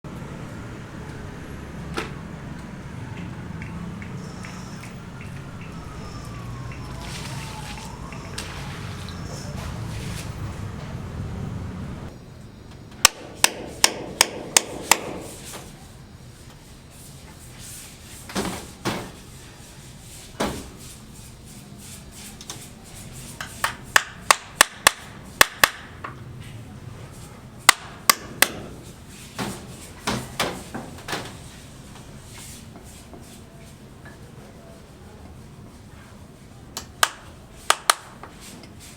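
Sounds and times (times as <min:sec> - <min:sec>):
hammer strikes: 0:13.0 - 0:15.4, 0:23.6 - 0:26.1, 0:27.7 - 0:28.8.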